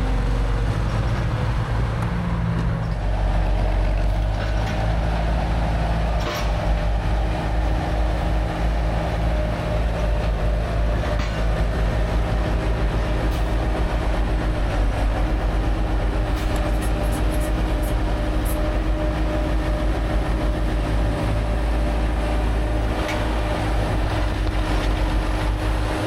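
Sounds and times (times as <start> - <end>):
heavy machinery engine drone: 0.0 - 26.0.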